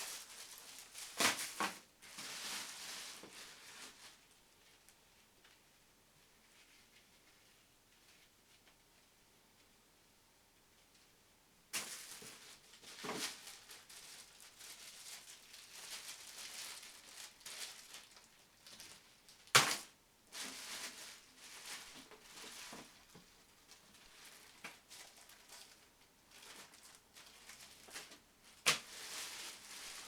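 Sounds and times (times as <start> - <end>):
packaging rustling and crinkling: 0.0 - 4.8, 11.8 - 30.0.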